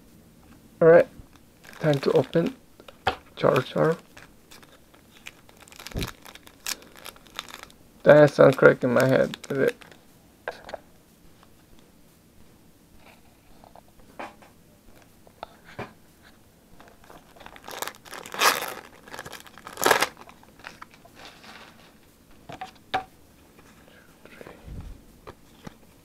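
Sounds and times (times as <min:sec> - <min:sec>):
foil wrapper crinkling and tearing: 0:01.2 - 0:02.6, 0:03.4 - 0:10.0, 0:16.9 - 0:21.9.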